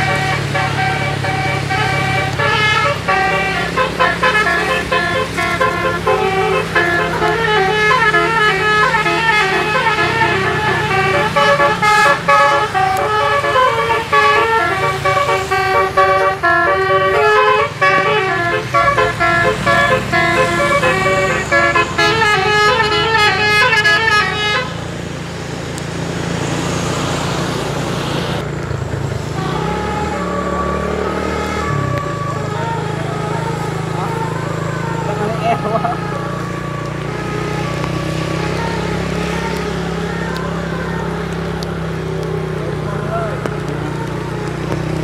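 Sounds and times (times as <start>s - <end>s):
multi-tone air horn tune: 0.0s - 24.9s
bus engine running: 0.0s - 45.0s
road noise: 0.0s - 45.0s.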